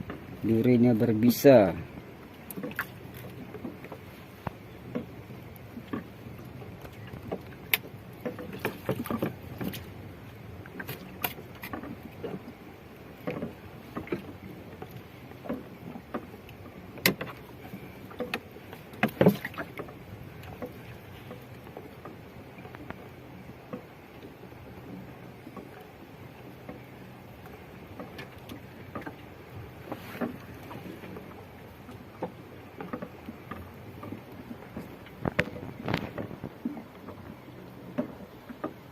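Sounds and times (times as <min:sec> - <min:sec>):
fishing gear knocking on hull: 0:13.2 - 0:20.8.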